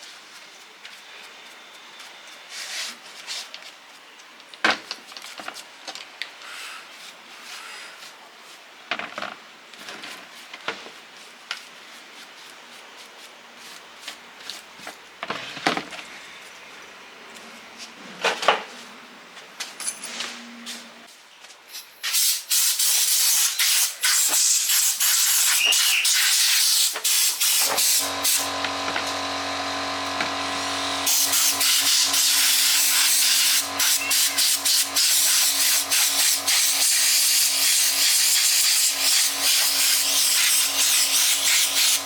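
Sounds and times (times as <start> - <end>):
spray hissing: 22.1 - 28.5, 30.5 - 42.0.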